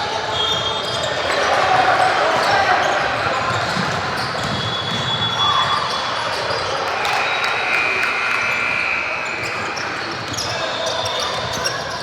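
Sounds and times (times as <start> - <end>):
ball bouncing on court: 3.4 - 5.9.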